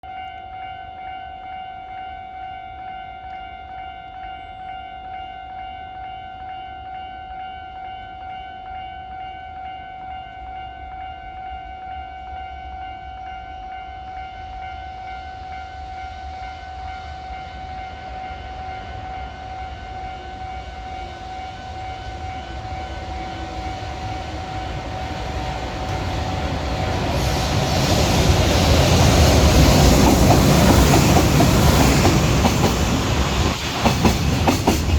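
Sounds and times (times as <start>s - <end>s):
level-crossing warning bell: 0.0s - 34.2s
freight train rumble: 9.6s - 34.9s.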